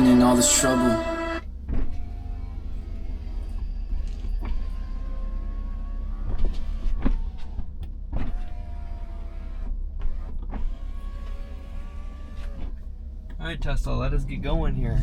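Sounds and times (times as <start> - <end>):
car cabin rumble: 9.7 - 15.0.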